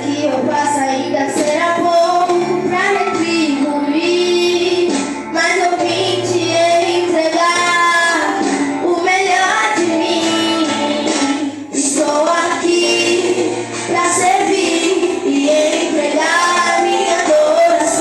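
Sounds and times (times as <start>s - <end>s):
instrumental backing: 0.0s - 18.0s
woman singing: 0.0s - 18.0s.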